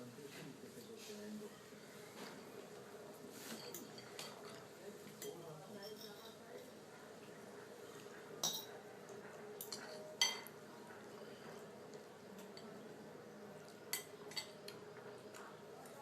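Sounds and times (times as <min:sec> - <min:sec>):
cutlery clinking on dishes: 0:03.3 - 0:06.8, 0:08.2 - 0:10.6, 0:11.5 - 0:12.8, 0:13.8 - 0:15.5.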